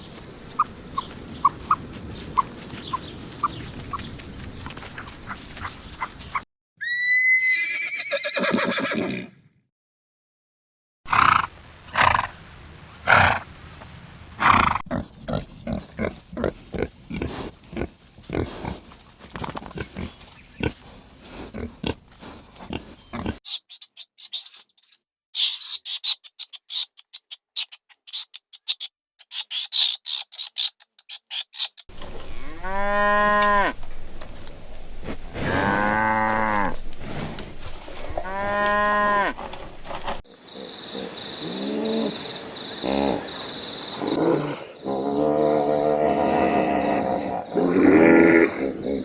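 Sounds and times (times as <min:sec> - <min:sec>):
cattle mooing: 0:32.0 - 0:34.0, 0:35.3 - 0:40.2.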